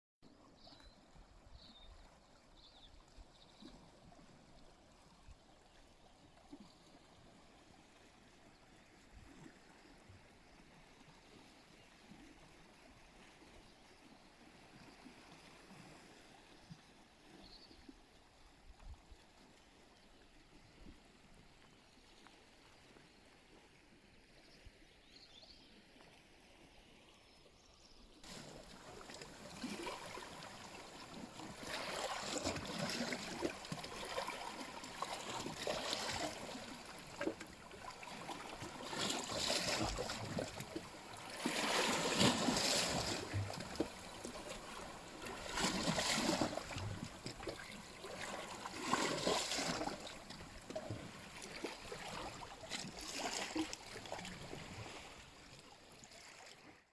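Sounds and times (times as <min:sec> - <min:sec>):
small waves splashing at shore: 0:06.5 - 0:17.5, 0:28.2 - 0:56.9.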